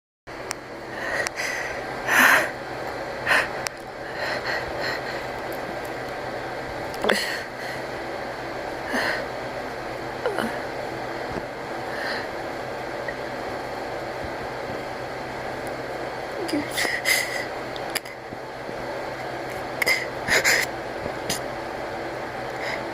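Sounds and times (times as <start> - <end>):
gasping breaths: 3.2 - 5.5.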